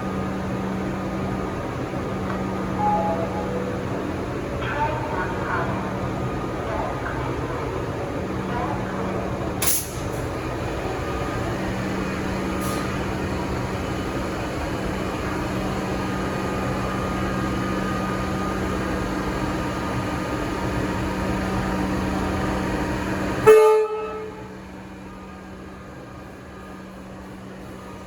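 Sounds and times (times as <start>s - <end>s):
electric train humming: 0.0s - 28.0s
train horn toot: 23.4s - 24.6s.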